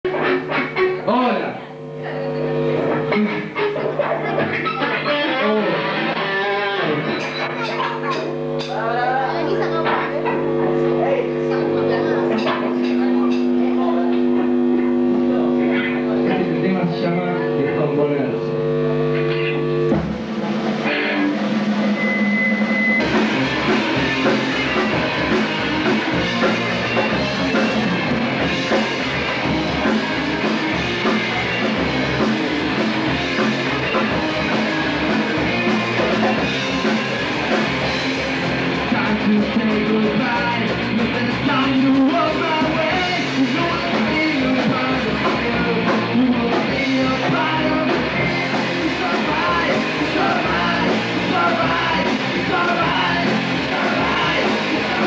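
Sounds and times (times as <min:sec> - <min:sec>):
fast punk rock song: 0:00.0 - 0:02.0, 0:18.5 - 0:55.0
electric guitars: 0:00.0 - 0:55.0
steady drum beat: 0:18.4 - 0:55.0
person singing: 0:38.8 - 0:55.0.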